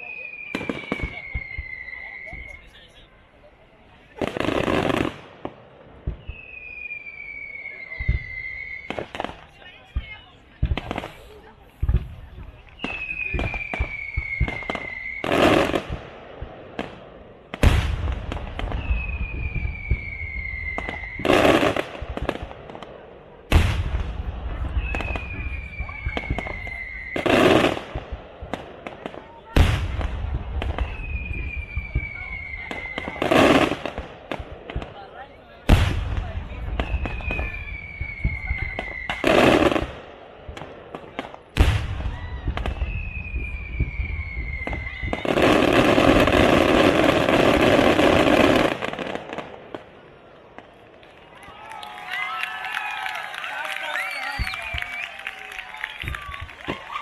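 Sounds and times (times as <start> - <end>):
firework whistle: 0.0 - 3.0, 6.0 - 9.6, 10.9 - 16.0, 17.6 - 22.3, 24.5 - 28.1, 30.7 - 34.0, 35.8 - 40.0, 41.6 - 48.8, 51.3 - 57.0
fireworks bursting with bangs: 0.0 - 57.0.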